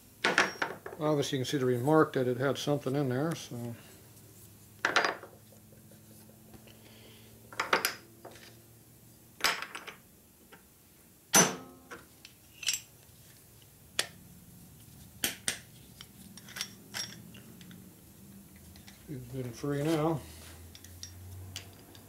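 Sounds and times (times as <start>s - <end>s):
metal parts clinking on workbench: 0.2s - 0.8s, 11.4s - 12.9s, 16.4s - 17.8s.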